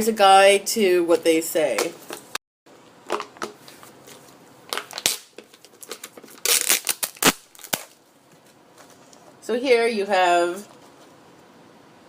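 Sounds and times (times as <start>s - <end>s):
snack packaging crinkling: 3.1s - 8.0s.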